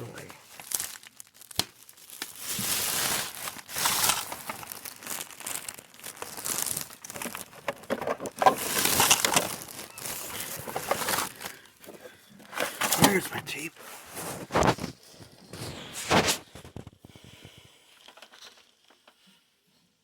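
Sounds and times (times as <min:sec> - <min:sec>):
rustling and crinkling of plastic and paper: 0:00.0 - 0:19.4.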